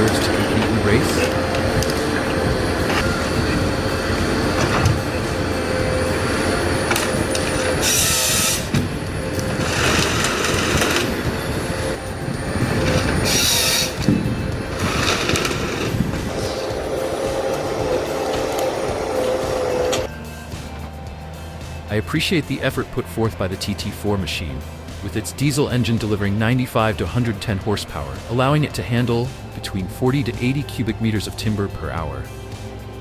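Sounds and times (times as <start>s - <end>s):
diesel engine running with whine: 0.0s - 21.8s, 23.0s - 33.0s
hydraulic hiss bursts: 6.0s - 8.8s, 13.0s - 14.1s, 14.7s - 20.1s.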